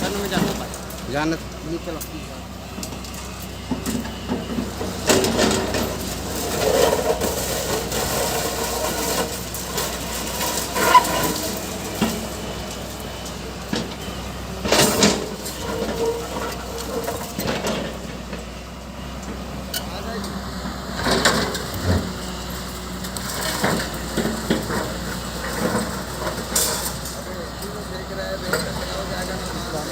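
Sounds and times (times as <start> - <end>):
diesel engine running under work: 0.0 - 29.9
scraping: 4.0 - 18.5.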